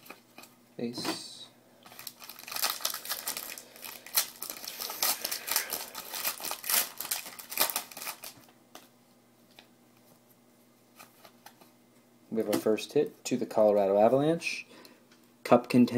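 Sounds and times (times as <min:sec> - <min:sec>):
wrapper crinkling and tearing: 0:01.8 - 0:08.6
cards rustling: 0:01.8 - 0:08.9.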